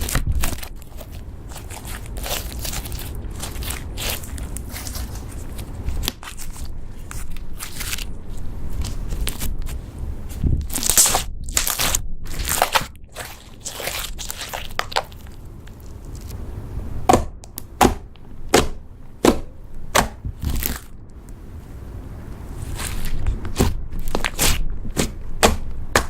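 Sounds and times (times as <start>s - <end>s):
slime squished by hand: 0.0s - 8.1s, 8.7s - 16.3s, 22.6s - 26.0s
slime crackling and crunching: 0.0s - 16.4s, 20.2s - 21.0s, 22.6s - 26.0s.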